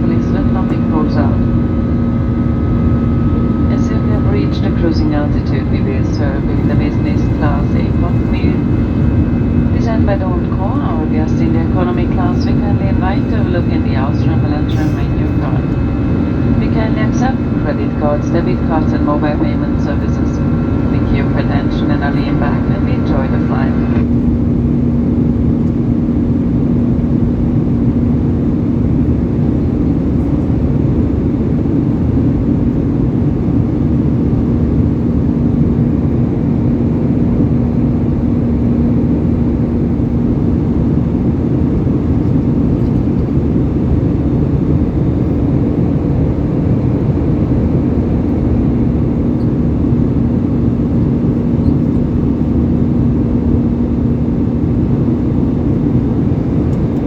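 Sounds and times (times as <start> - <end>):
constant low hum: 0.0 - 57.0
jet engines and rushing air drone: 0.0 - 57.0.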